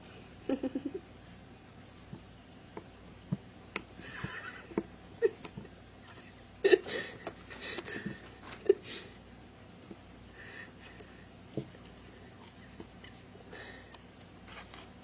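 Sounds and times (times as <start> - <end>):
rustling handling noises: 7.2 - 8.8, 10.9 - 15.0.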